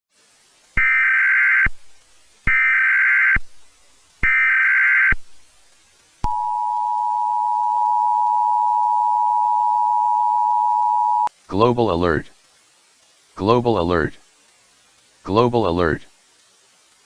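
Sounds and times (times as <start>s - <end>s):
two-tone attention signal: 6.2s - 11.3s.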